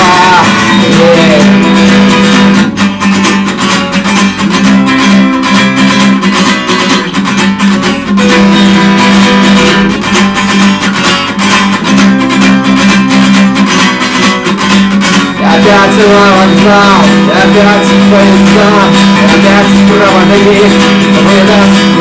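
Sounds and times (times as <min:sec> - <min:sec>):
steady drum beat: 0:00.0 - 0:02.6, 0:15.4 - 0:22.0
rock guitars strumming and picking: 0:00.0 - 0:22.0.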